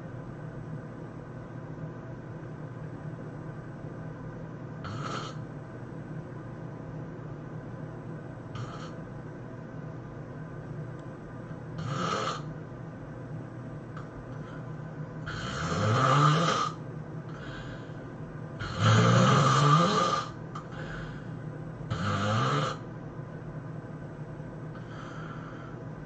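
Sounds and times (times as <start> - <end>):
person snoring: 4.8 - 5.4, 8.6 - 9.0, 11.8 - 12.5, 14.4 - 18.0, 18.6 - 21.3, 21.9 - 22.8
soft breaths: 17.3 - 18.2, 20.6 - 21.5, 24.8 - 25.9.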